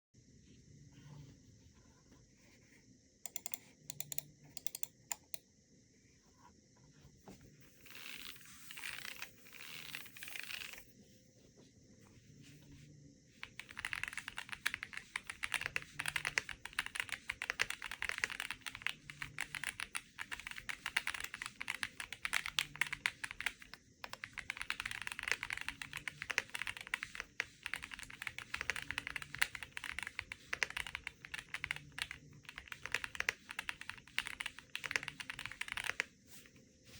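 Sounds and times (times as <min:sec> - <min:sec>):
mechanical keyboard typing: 0:03.3 - 0:05.4, 0:13.4 - 0:36.1.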